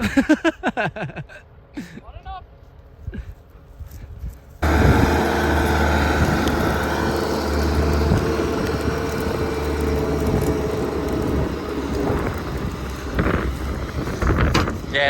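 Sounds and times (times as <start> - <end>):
diesel engine droning: 4.6 - 15.0
high whine: 4.6 - 15.0.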